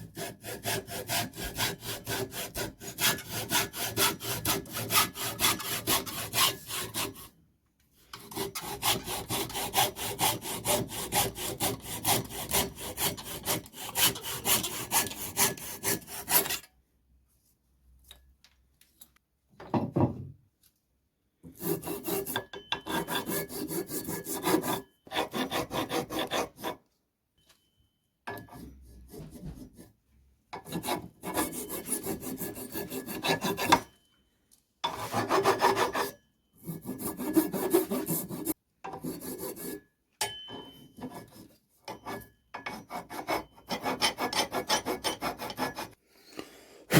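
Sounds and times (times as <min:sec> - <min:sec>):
hand rasp on wood: 0:00.0 - 0:07.3, 0:08.2 - 0:16.6, 0:21.5 - 0:26.8, 0:30.6 - 0:33.8, 0:34.9 - 0:39.8, 0:42.7 - 0:46.0.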